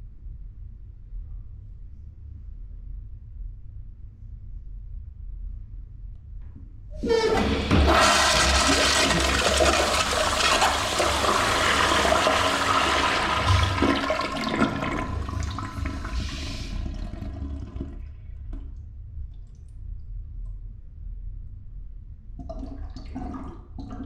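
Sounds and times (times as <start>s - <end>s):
toilet flushing: 7.0s - 18.5s, 22.4s - 24.0s.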